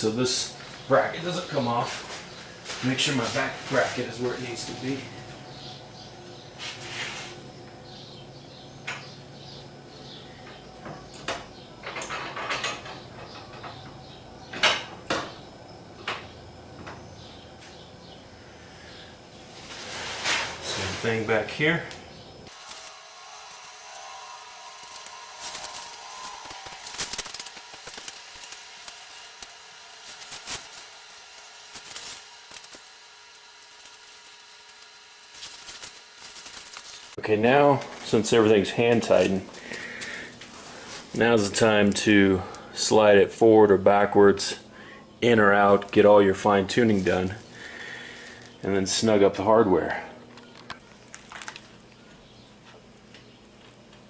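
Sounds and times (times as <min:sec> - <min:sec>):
metal hardware clinking and scraping: 0:11.3 - 0:13.9.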